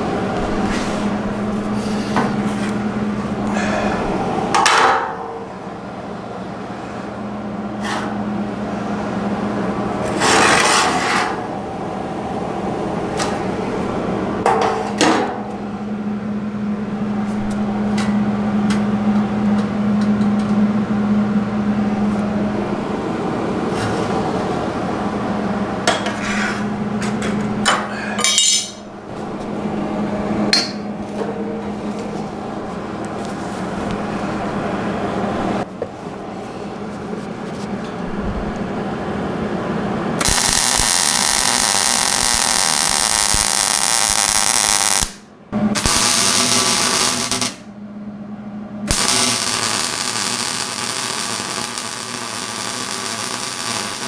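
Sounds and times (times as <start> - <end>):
steady low hum: 0.0 - 54.0
tools clanking on metal: 27.0 - 28.9
noisy bursts: 38.2 - 47.7, 48.8 - 54.0.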